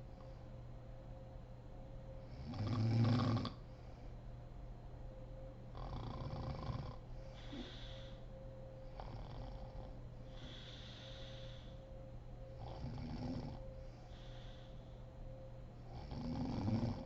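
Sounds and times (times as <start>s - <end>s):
woman snoring: 2.4s - 3.6s, 5.7s - 8.2s, 9.0s - 11.6s, 12.6s - 13.6s, 15.9s - 17.0s
hissing breath: 7.2s - 8.3s, 10.3s - 11.8s.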